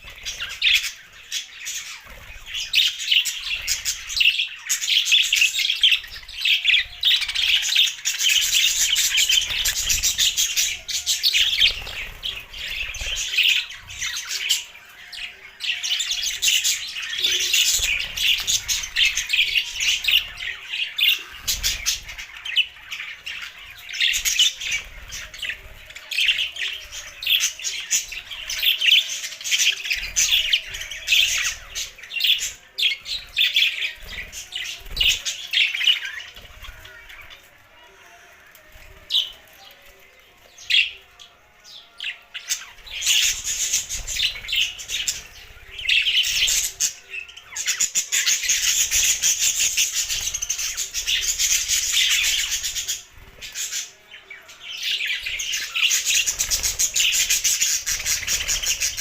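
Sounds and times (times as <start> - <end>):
budgerigars chattering and chirping: 42.3 - 59.0.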